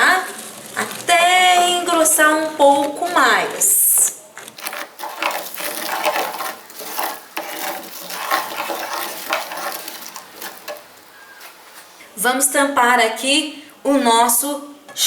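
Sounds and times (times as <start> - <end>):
spoon scraping and knocking pot: 4.4 - 11.6.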